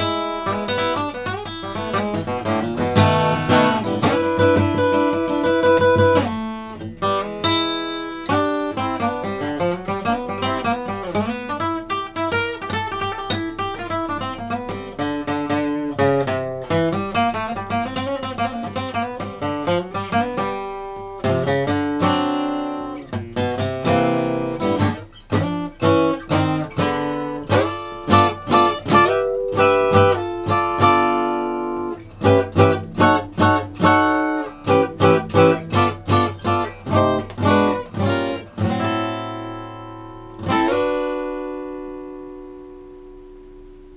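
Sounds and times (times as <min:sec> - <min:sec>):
acoustic guitar fingerpicking and strumming: 0:00.0 - 0:43.9.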